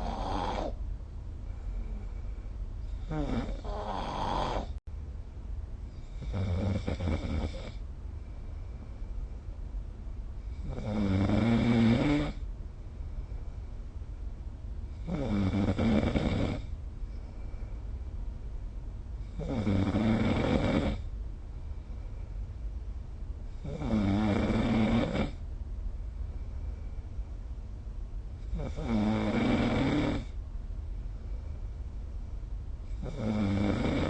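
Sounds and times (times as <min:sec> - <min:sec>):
person snoring: 0:00.0 - 0:00.8, 0:02.9 - 0:04.8, 0:15.0 - 0:16.7, 0:23.6 - 0:25.4, 0:28.5 - 0:30.3, 0:33.0 - 0:34.0.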